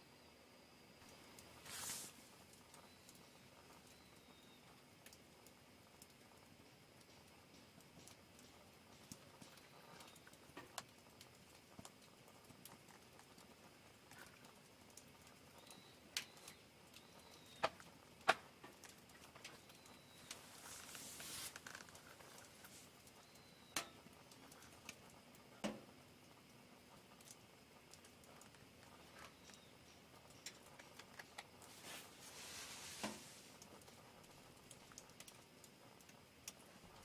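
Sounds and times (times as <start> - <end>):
wood fire crackling: 1.0 - 37.0
brief hiss: 1.6 - 2.3, 31.7 - 33.6.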